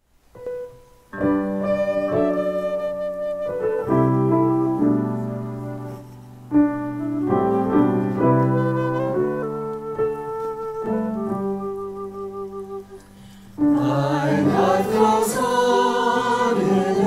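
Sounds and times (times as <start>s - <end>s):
piano chords ringing: 0.4s - 17.0s.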